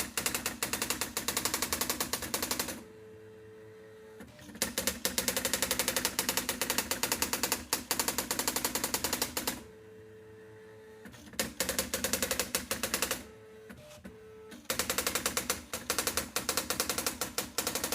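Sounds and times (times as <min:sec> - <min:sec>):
typewriter type strikes: 0:00.0 - 0:02.8, 0:04.6 - 0:09.6, 0:11.4 - 0:13.2, 0:14.6 - 0:17.9
typewriter steady hum: 0:00.0 - 0:02.9, 0:04.4 - 0:09.7, 0:11.1 - 0:13.4, 0:14.5 - 0:17.9.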